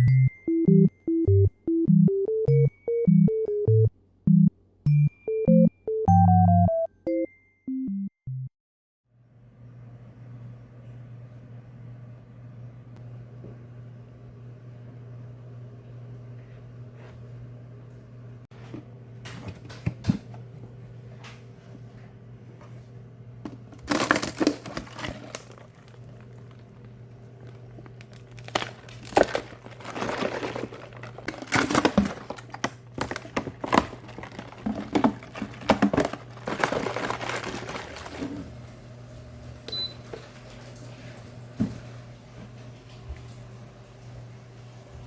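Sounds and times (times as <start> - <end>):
plastic crinkling: 23.8 - 38.5.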